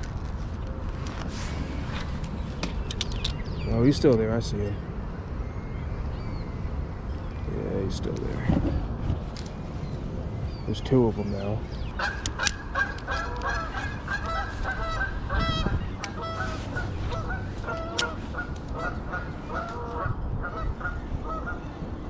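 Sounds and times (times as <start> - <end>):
geese honking: 11.9 - 21.7.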